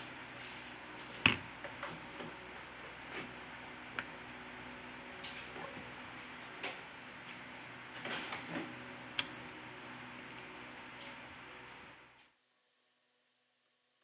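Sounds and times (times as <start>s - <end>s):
steady low hum: 0.0s - 12.2s.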